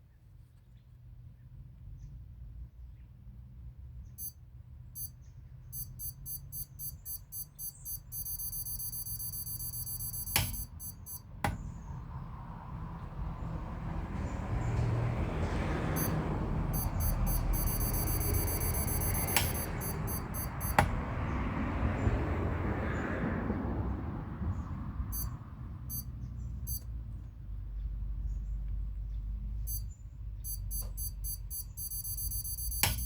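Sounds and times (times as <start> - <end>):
torque wrench beeping: 5.8 - 11.3, 16.0 - 20.9, 30.5 - 33.0
sharp clicks: 5.8 - 11.6, 16.8 - 21.0, 30.5 - 33.0.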